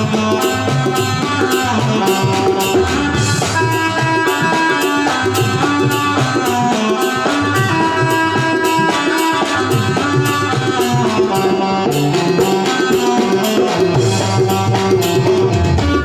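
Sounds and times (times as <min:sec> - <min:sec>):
drum and percussion rhythm: 0:00.0 - 0:16.0
keyboard melody: 0:00.0 - 0:16.0.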